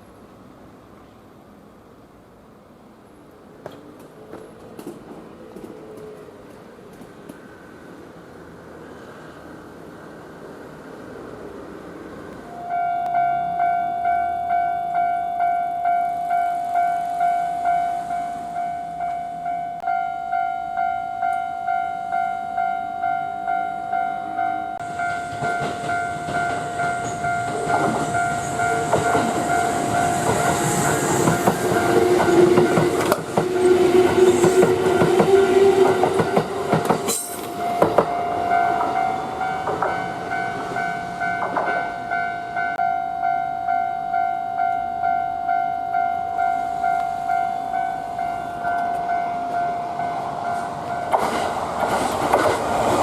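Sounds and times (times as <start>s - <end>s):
level crossing bell ringing: 12.6s - 30.2s, 34.9s - 51.1s
train wheels clattering: 24.8s - 41.9s, 50.1s - 53.0s.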